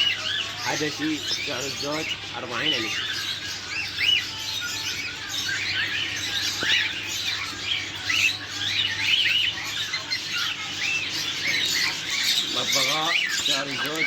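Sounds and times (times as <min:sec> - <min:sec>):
birds chirping and squawking: 0:00.0 - 0:14.0.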